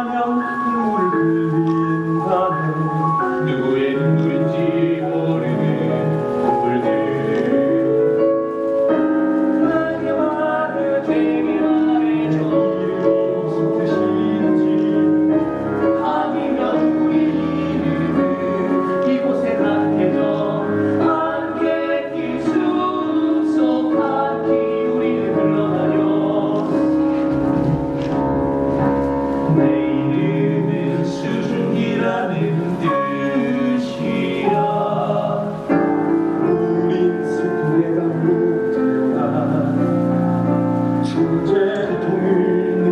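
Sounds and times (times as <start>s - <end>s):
piano accompaniment: 0.0s - 42.9s
several voices singing together: 9.6s - 27.4s, 29.5s - 35.8s.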